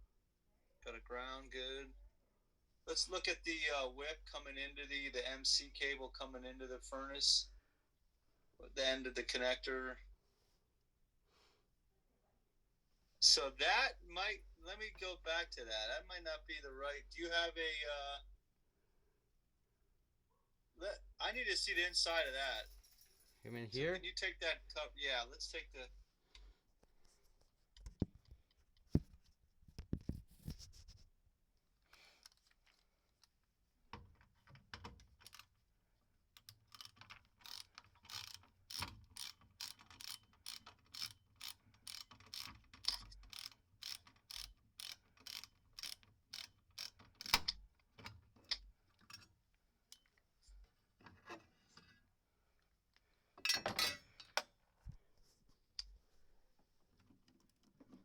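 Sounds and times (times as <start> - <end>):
metal clicks and handling: 34.0 - 35.5, 36.4 - 50.2, 53.4 - 54.5
ratcheting hand tool clicking: 34.8 - 35.5, 36.4 - 47.6.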